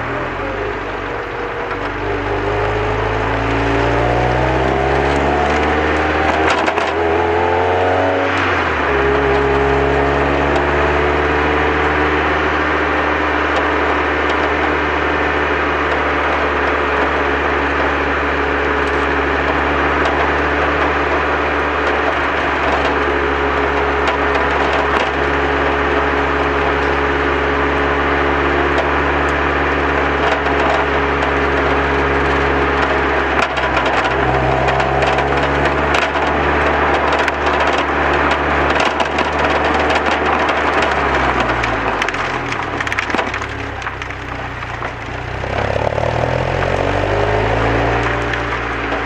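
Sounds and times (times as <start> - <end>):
car engine running: 0.0 - 49.0
sharp crackling clicks: 1.4 - 7.4, 30.2 - 49.0.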